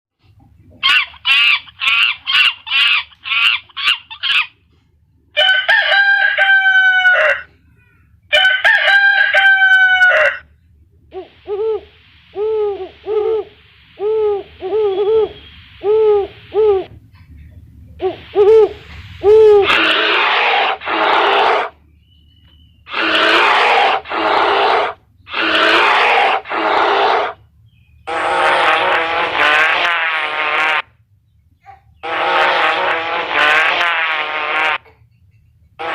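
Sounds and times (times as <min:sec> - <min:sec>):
animal and bird calls: 0:00.3 - 0:04.7, 0:10.0 - 0:33.9
rooster crowing: 0:05.4 - 0:07.6, 0:08.3 - 0:10.5.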